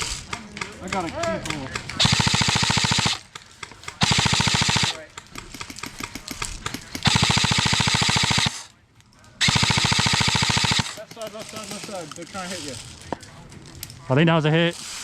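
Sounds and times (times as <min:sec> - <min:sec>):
airsoft machine gun firing: 0:01.8 - 0:08.7, 0:09.4 - 0:11.9.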